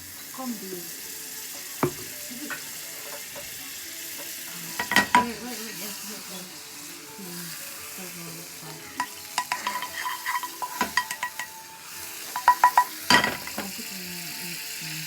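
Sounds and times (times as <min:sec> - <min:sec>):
pan sizzling: 0:00.0 - 0:15.0
metal utensil clinking against bowl: 0:04.2 - 0:05.4, 0:08.9 - 0:11.6, 0:12.2 - 0:13.8.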